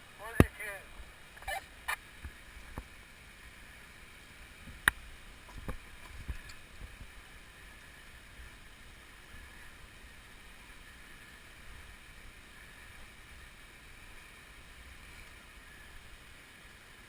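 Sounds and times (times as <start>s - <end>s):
faint steady rushing noise: 0.0s - 17.0s
wind rumbling on microphone: 4.6s - 7.4s.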